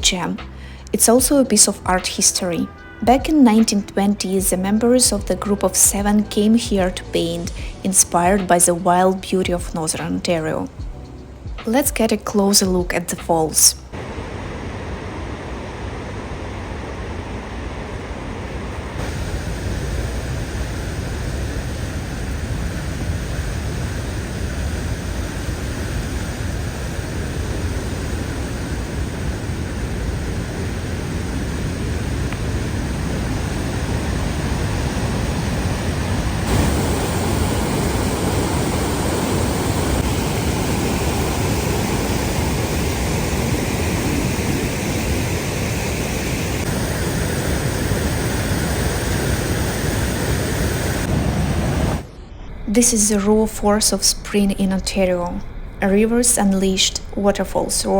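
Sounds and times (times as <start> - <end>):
waterfall rushing: 14.0 - 52.1.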